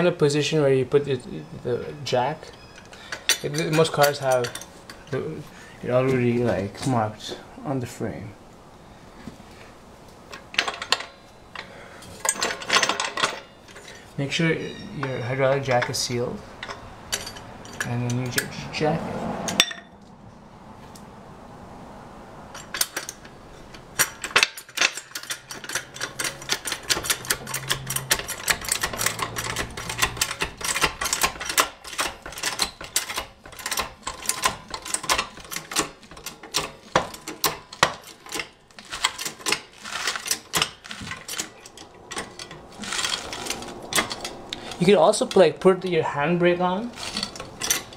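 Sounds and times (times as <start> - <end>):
floor jack metallic clicking: 22.6 - 45.5.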